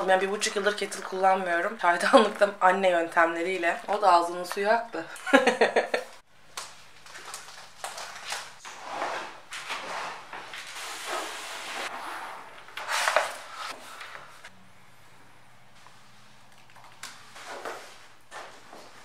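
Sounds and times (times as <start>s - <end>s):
rubbing sounds: 8.4s - 14.5s.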